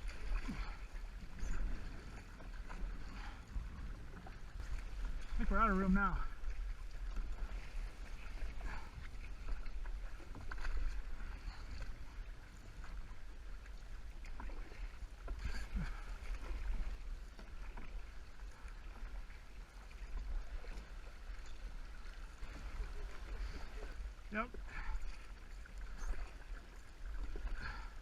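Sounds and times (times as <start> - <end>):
moving water: 0.0 - 28.0
paddle splashing in water: 0.0 - 28.0.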